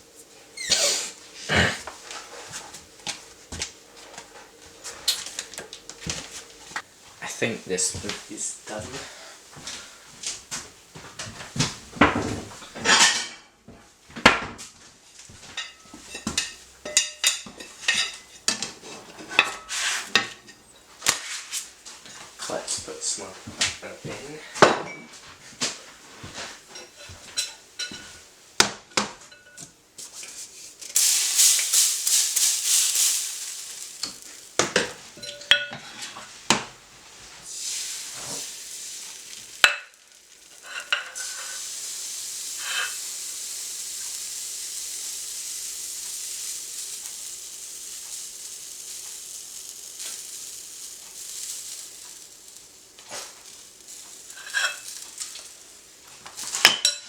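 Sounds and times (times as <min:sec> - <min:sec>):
batter sizzling in a frying pan: 0:00.0 - 0:13.4, 0:15.2 - 0:24.5, 0:25.3 - 0:57.0
utensils clinking against pan: 0:12.8 - 0:13.5, 0:15.6 - 0:20.9, 0:26.7 - 0:28.2, 0:29.0 - 0:36.3, 0:37.5 - 0:57.0.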